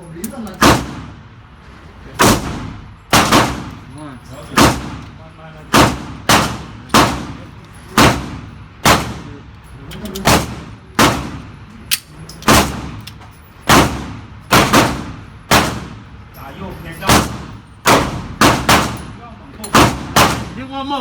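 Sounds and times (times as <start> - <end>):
pistol gunshots echoing: 0.6 - 1.2, 2.2 - 3.8, 4.6 - 5.1, 5.7 - 7.4, 8.0 - 9.3, 10.2 - 11.6, 12.4 - 13.0, 13.7 - 16.0, 17.1 - 20.6.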